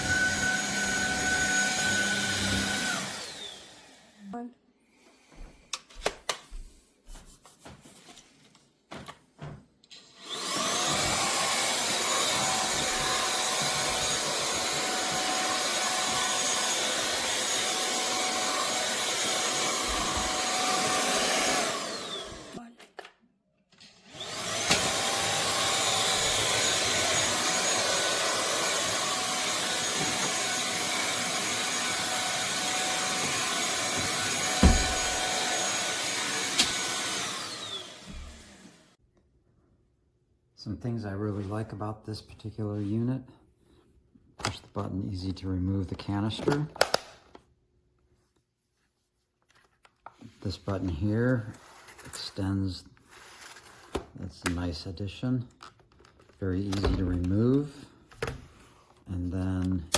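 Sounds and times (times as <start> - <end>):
vacuum cleaner motor whine: 0.0 - 4.3, 10.0 - 22.6, 23.8 - 39.0.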